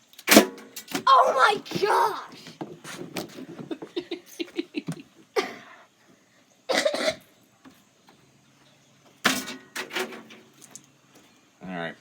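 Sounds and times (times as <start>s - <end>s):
person laughing: 3.5s - 5.5s
person coughing: 5.4s - 5.7s, 6.7s - 7.2s.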